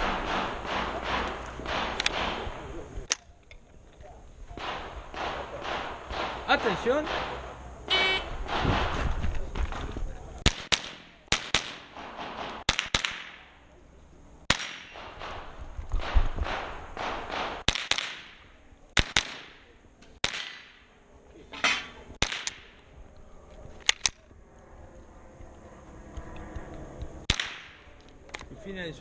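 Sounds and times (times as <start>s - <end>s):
rifle shots: 0.0s - 2.9s, 4.6s - 9.2s, 10.4s - 13.6s, 14.4s - 20.9s, 22.2s - 22.8s, 27.3s - 28.0s.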